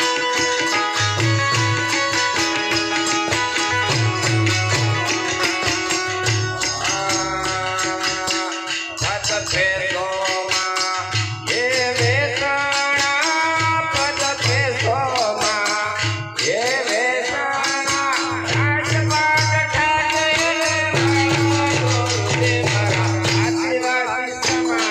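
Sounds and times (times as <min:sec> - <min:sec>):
man singing: 0:05.0 - 0:24.9.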